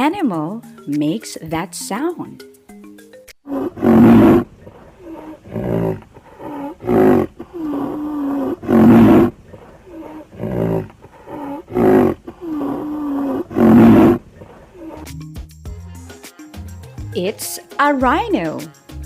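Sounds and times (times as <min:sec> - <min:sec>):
rhinoceros calls: 0:03.5 - 0:15.1.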